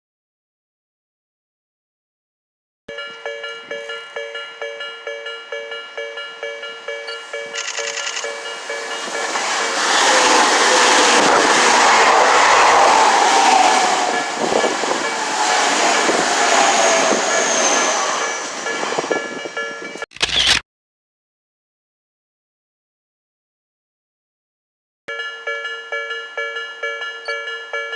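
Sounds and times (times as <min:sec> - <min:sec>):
level crossing bell ringing: 0:02.9 - 0:11.0, 0:25.1 - 0:27.9
train passing: 0:02.9 - 0:20.0.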